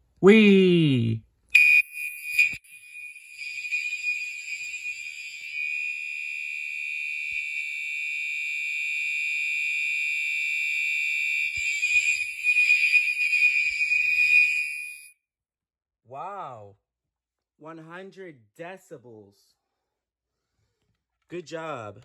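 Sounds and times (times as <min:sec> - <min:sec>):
high-pitched fire alarm horn: 0:01.6 - 0:15.1.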